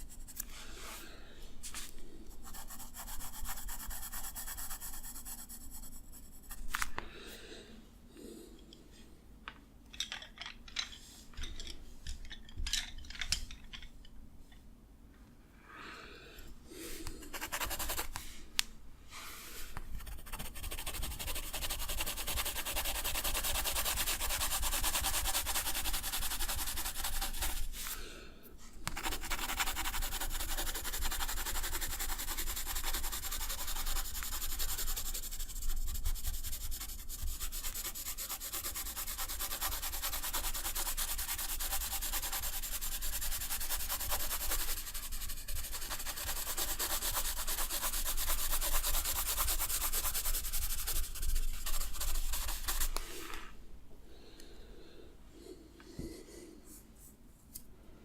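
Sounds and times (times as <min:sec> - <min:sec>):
scratchy strokes on paper: 0:02.3 - 0:06.6, 0:17.2 - 0:18.4, 0:19.2 - 0:28.0, 0:28.9 - 0:53.5
fast rubbing on paper: 0:02.4 - 0:06.6, 0:17.2 - 0:18.2, 0:20.0 - 0:27.9, 0:28.9 - 0:53.4.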